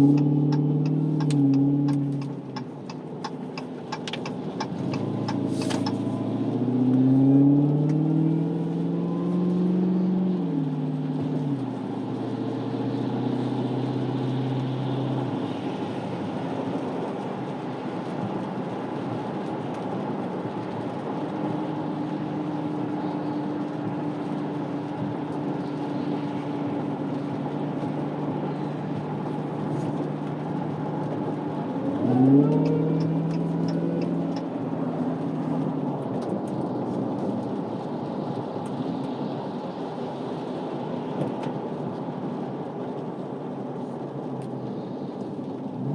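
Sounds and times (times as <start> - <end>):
car engine revving: 0.0 - 16.8, 20.4 - 39.2, 45.2 - 45.9
road hiss: 4.2 - 6.7.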